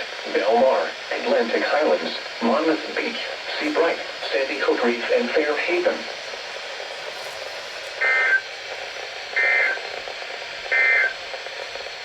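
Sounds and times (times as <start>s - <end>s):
radio hiss: 0.0s - 12.0s
two-tone data bursts: 8.0s - 8.4s, 9.4s - 9.8s, 10.7s - 11.2s.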